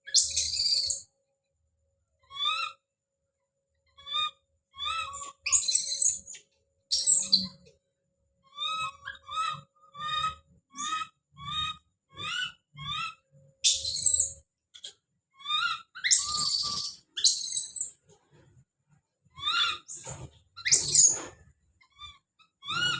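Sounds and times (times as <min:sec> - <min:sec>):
baby monkey calling: 0:00.1 - 0:01.0, 0:02.3 - 0:02.8, 0:04.0 - 0:07.6, 0:08.4 - 0:18.0, 0:19.3 - 0:22.9
shrill monkey screams: 0:00.1 - 0:01.0, 0:02.3 - 0:02.8, 0:04.0 - 0:06.2, 0:08.5 - 0:14.4, 0:15.4 - 0:17.9, 0:19.4 - 0:22.9.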